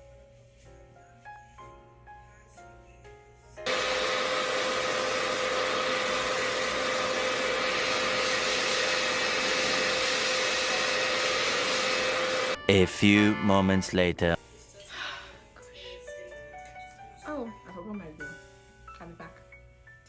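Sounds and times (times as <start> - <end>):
soft background music: 0.0 - 3.7, 12.6 - 20.0
hair dryer running: 3.7 - 12.6.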